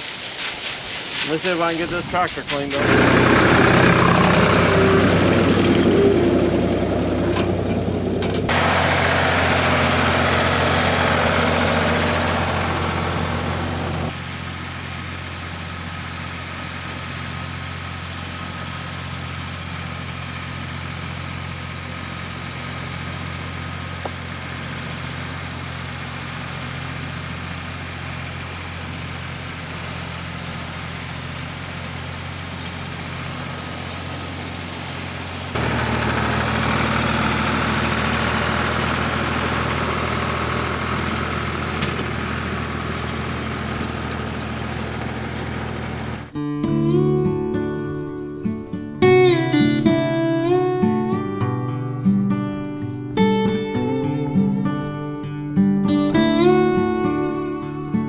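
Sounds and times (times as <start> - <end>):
loud hissing rush: 0.0 - 5.4
engine idling: 1.2 - 58.0.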